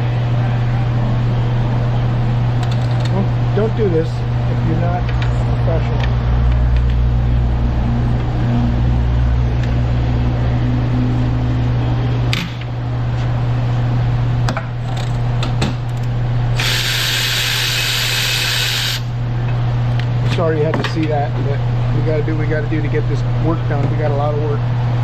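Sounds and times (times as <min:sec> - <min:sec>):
power tool running: 0:16.5 - 0:19.1
loud hiss: 0:16.6 - 0:19.1.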